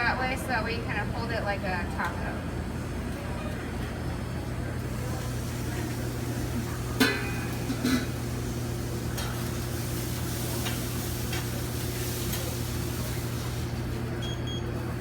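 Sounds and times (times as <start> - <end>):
steady low hum: 0.0 - 15.0
chicken sizzling on grill: 4.8 - 15.0.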